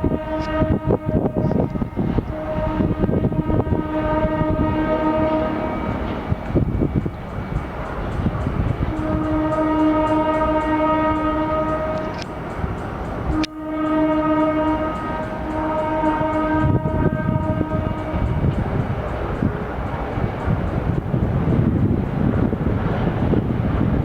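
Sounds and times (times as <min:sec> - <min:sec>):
locomotive horn blasts: 0:00.0 - 0:06.8, 0:08.3 - 0:20.8
freight train rumbling: 0:00.0 - 0:24.0.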